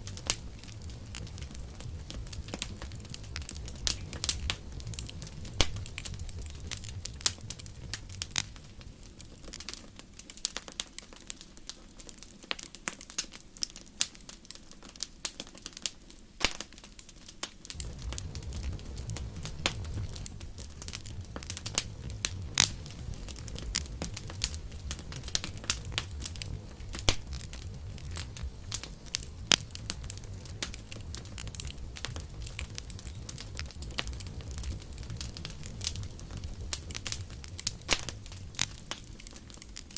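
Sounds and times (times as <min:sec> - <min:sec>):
campfire crackling and popping: 0:00.0 - 0:39.9
low rumble of flame: 0:00.0 - 0:39.9.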